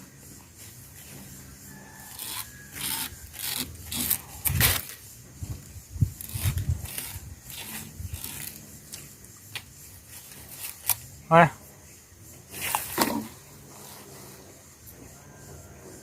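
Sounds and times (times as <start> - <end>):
person chewing sugarcane: 2.0 - 4.9.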